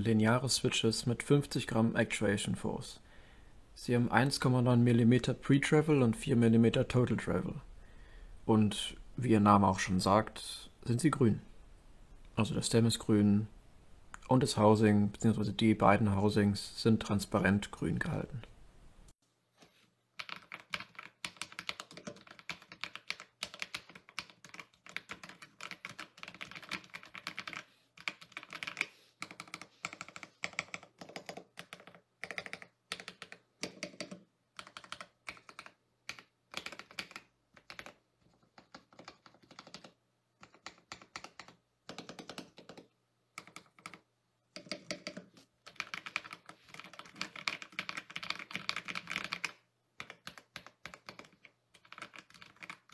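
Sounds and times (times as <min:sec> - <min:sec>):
mechanical keyboard typing: 0:20.2 - 0:44.0, 0:44.6 - 0:52.9.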